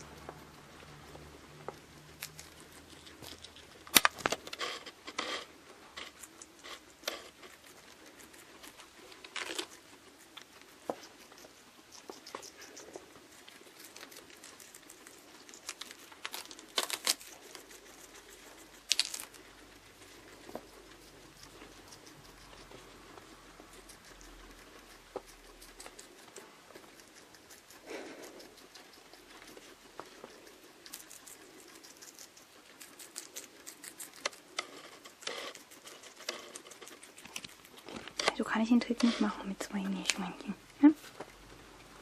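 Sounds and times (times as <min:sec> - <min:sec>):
guinea pig feet pattering: 0:00.0 - 0:42.0.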